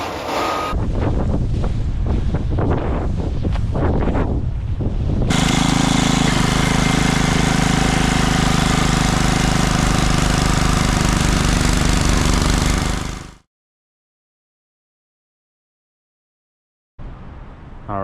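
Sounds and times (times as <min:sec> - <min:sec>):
wind buffeting microphone: 0:00.8 - 0:05.5
small engine running: 0:05.3 - 0:13.5.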